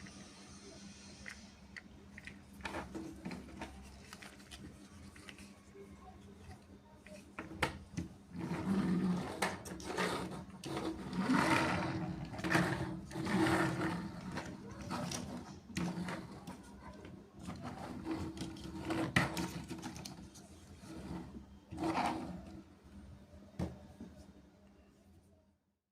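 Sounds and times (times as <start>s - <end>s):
plastic toys clattering: 2.1s - 5.6s.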